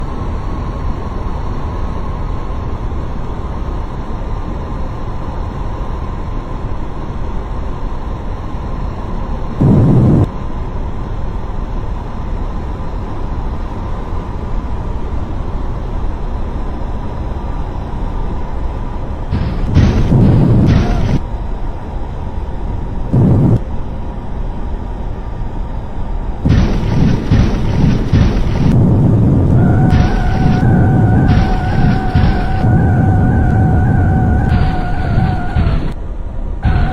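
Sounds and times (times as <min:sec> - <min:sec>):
constant whine: 0:00.0 - 0:36.9
aeroplane roaring: 0:07.4 - 0:10.8, 0:16.3 - 0:36.9.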